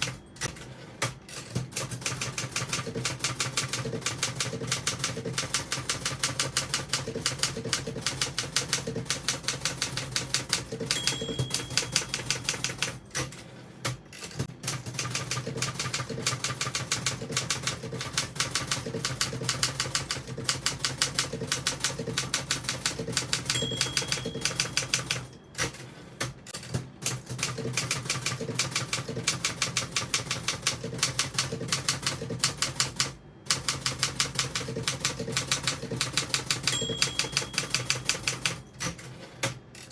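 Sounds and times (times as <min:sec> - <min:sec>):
typewriter keys clicking: 0:00.0 - 0:39.9
typewriter bell ding: 0:10.4 - 0:13.0, 0:23.1 - 0:25.7, 0:36.1 - 0:38.7.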